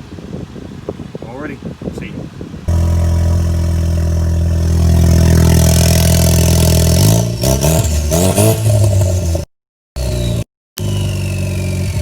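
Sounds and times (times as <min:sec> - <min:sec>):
car engine idling and revving: 0:02.7 - 0:12.0.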